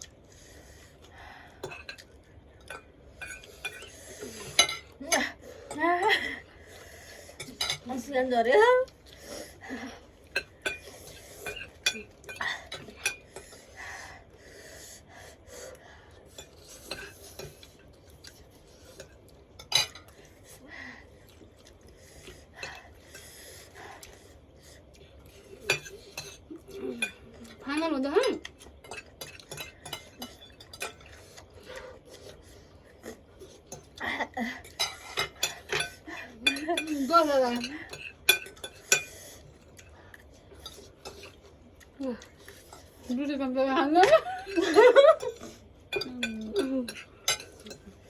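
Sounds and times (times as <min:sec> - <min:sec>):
metal spoons clinking on dishes: 0:01.6 - 0:02.0, 0:02.6 - 0:05.8, 0:07.4 - 0:07.9, 0:10.3 - 0:13.6, 0:19.0 - 0:20.2, 0:25.6 - 0:31.2, 0:34.6 - 0:39.2, 0:44.0 - 0:47.9
spoons scraping bowls: 0:34.6 - 0:39.5.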